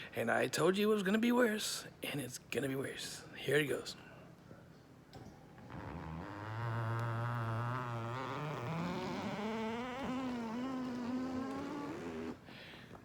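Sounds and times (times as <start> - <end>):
recliner couch buzzing drone: 5.6 - 12.4.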